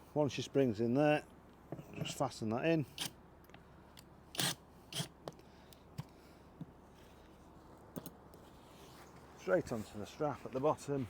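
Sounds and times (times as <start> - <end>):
strap hardware scraping: 1.7 - 2.2.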